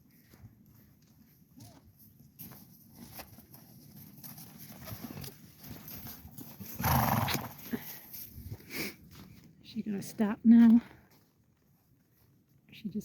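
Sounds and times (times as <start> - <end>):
horse hoofbeats galloping: 0.0 - 9.4.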